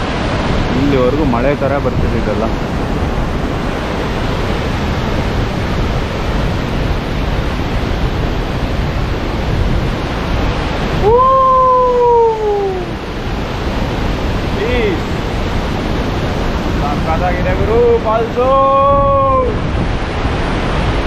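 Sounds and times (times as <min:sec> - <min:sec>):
waterfall roaring: 0:00.0 - 0:21.0
person calling: 0:11.0 - 0:13.0.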